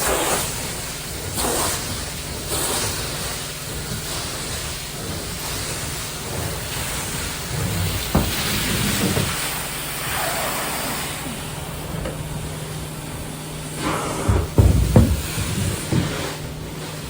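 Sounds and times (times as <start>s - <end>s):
rushing suction hiss: 0.0s - 17.0s
knocks: 8.1s - 9.4s, 14.2s - 16.2s
low machine hum: 11.0s - 17.0s.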